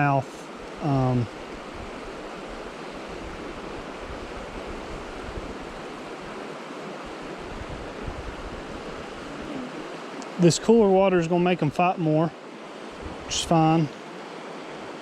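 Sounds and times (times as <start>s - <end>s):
water rushing over rocks: 0.0s - 15.0s
wind buffeting microphone: 1.3s - 10.2s, 12.9s - 13.4s.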